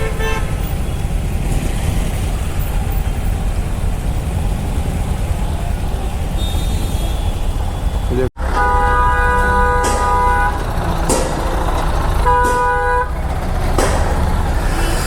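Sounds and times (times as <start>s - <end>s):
motorcycle engine running: 0.0s - 15.0s
surrounding traffic: 0.0s - 15.0s.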